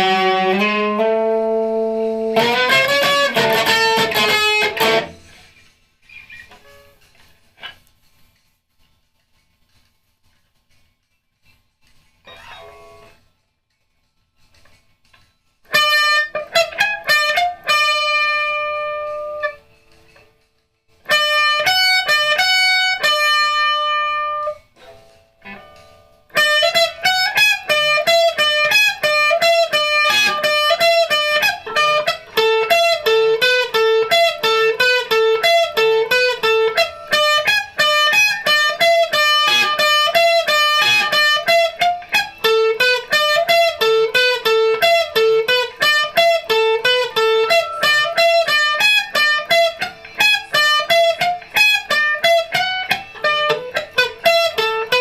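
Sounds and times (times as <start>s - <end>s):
electric guitar: 0.0s - 5.5s, 15.6s - 20.3s, 21.0s - 24.7s, 25.4s - 55.0s.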